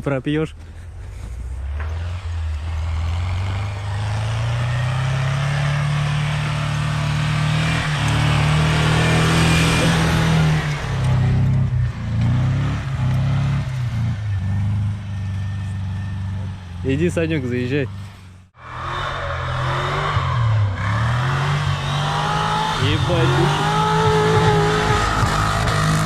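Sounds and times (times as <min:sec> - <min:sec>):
engine revving hard: 0:01.6 - 0:15.0, 0:18.6 - 0:26.0.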